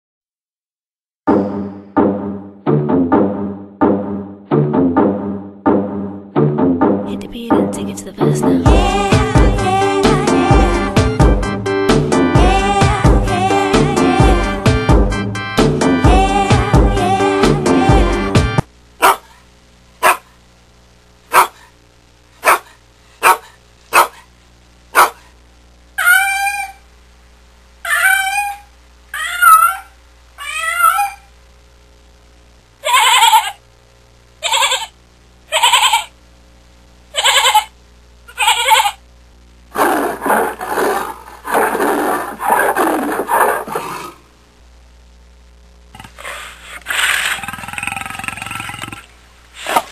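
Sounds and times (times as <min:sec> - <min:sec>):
animal calls: 0:26.0 - 0:26.8, 0:27.8 - 0:31.3, 0:46.0 - 0:49.8.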